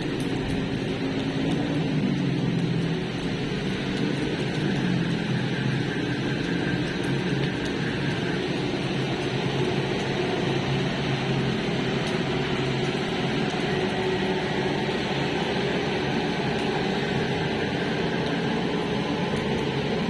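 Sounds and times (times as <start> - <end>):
steady droning noise: 0.0 - 20.0.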